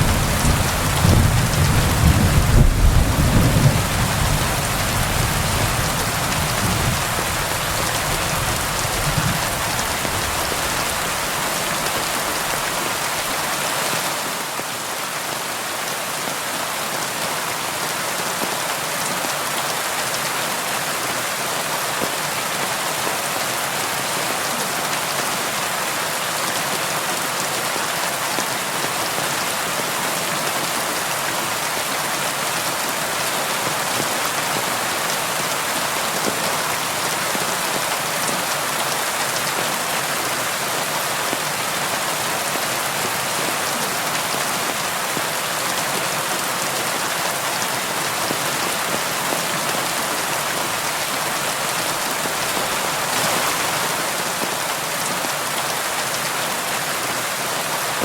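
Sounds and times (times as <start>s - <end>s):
rain pattering on a window: 0.1s - 14.0s.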